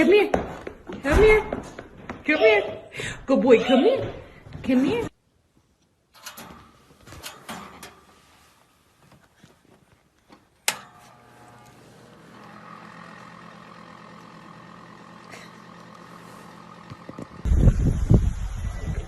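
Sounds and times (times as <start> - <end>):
steady mechanical hum: 10.7 - 19.0
wind buffeting microphone: 17.4 - 19.0.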